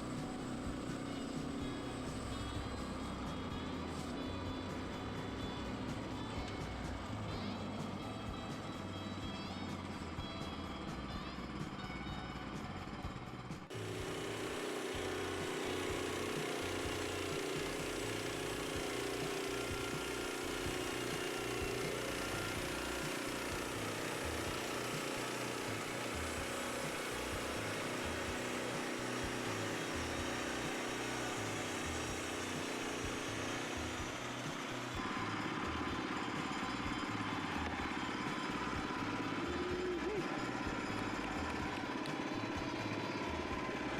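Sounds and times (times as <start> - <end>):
small gas engine running: 0.0 - 43.9.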